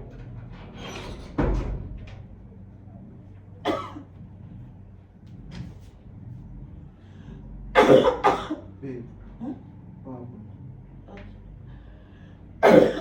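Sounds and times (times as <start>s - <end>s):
woman coughing: 3.6s - 4.1s, 7.8s - 8.7s, 12.6s - 13.0s.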